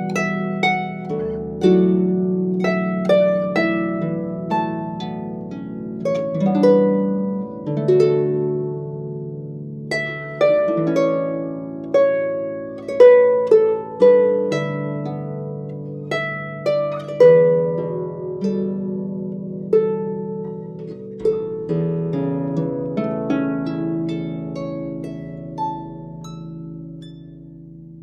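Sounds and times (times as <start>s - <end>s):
harp playing slow melody: 0.0s - 28.0s.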